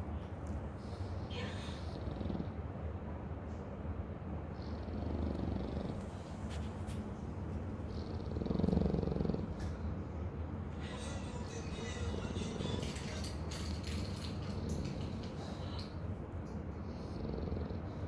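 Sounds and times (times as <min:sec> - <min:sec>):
dog snoring: 0:01.4 - 0:02.8, 0:04.4 - 0:06.6, 0:07.6 - 0:10.0, 0:16.8 - 0:18.0.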